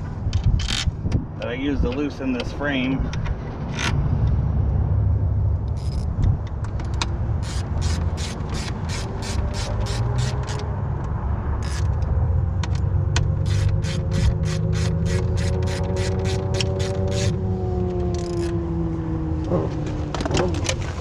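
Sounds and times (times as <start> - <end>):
socket ratchet clicking: 5.7 - 10.7, 11.6 - 12.1, 12.7 - 17.4, 18.1 - 18.6.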